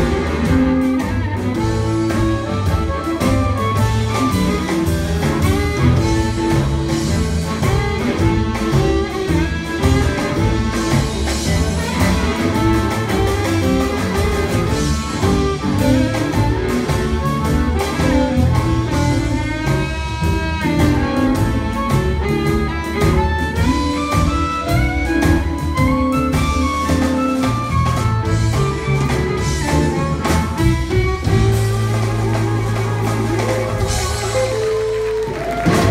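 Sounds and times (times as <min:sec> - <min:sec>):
blues band playing: 0:00.0 - 0:35.9
drum kit: 0:00.0 - 0:35.9
guitar bending notes: 0:00.0 - 0:35.9.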